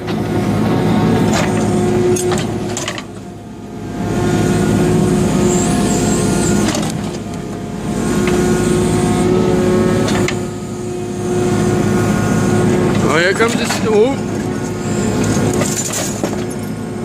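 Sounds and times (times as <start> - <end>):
excavator diesel engine running: 0.0 - 17.0.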